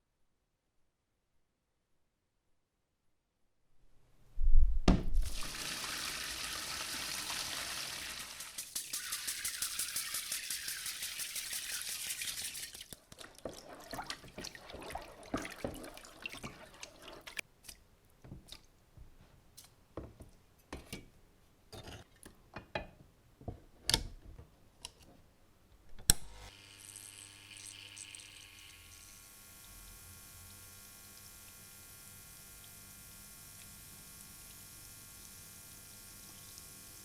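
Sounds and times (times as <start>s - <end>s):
water splashing and dripping: 5.2s - 17.4s.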